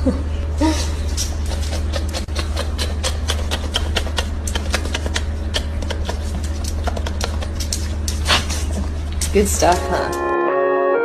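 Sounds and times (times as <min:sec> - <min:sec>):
steady low hum: 0:00.0 - 0:10.5
dog chewing wet clicks: 0:01.2 - 0:10.0.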